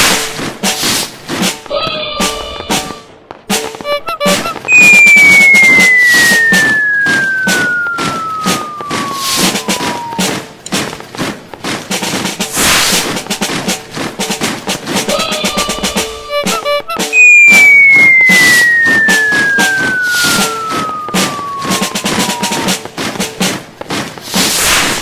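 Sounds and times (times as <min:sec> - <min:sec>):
snare drum roll: 0:00.0 - 0:25.0
falling whistle tone: 0:03.8 - 0:10.4, 0:16.3 - 0:22.8
short hiss: 0:12.5 - 0:13.2, 0:24.2 - 0:25.0.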